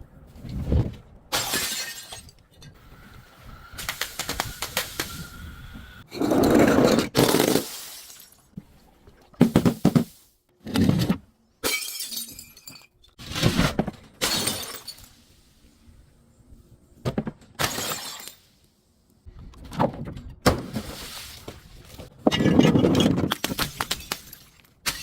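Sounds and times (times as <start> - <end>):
glass shattering: 1.3 - 2.3, 11.6 - 13.0, 14.2 - 15.2, 17.6 - 18.5.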